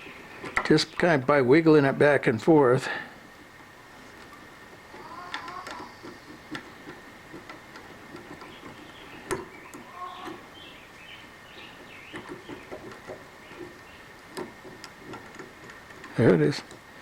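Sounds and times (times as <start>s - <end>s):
small metal clicks and ticks: 12.1s - 16.8s.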